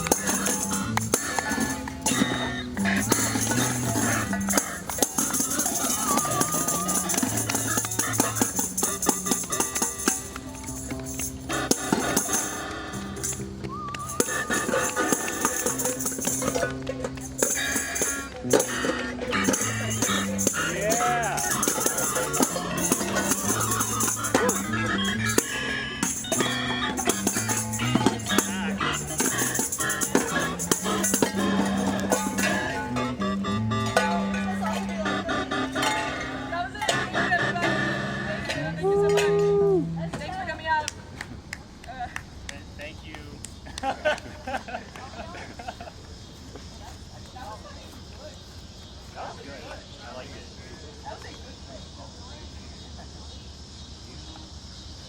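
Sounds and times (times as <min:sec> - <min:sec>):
shaken percussion rattling: 0:00.0 - 0:35.1
low bass line: 0:18.3 - 0:40.2.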